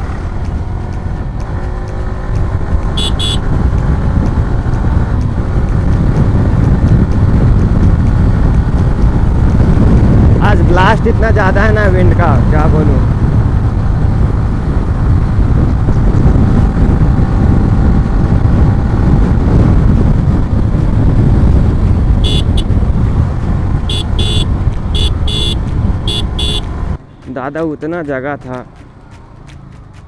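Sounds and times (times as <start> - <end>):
wind buffeting microphone: 0.0 - 27.0
motorcycle engine and road noise: 0.0 - 30.0
horn short toots: 3.0 - 3.5, 22.2 - 22.8, 23.8 - 26.7.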